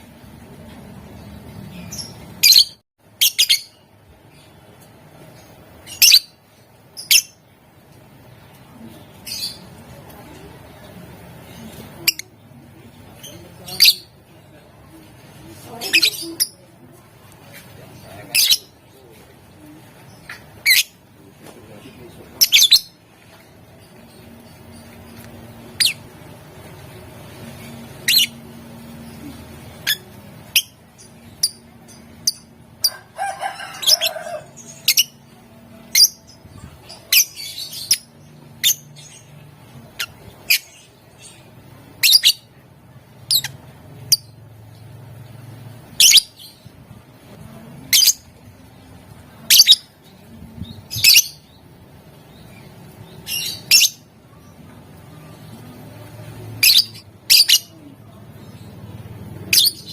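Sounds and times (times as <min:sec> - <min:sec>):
faint low hum: 0:00.0 - 0:59.9
lovebird chirping: 0:01.1 - 0:04.6, 0:05.2 - 0:07.5, 0:15.7 - 0:16.7, 0:22.4 - 0:23.0, 0:23.8 - 0:26.2, 0:26.8 - 0:32.7, 0:34.7 - 0:42.5, 0:43.2 - 0:45.0, 0:45.9 - 0:46.7, 0:49.4 - 0:51.7, 0:52.3 - 0:58.8, 0:59.4 - 0:59.9.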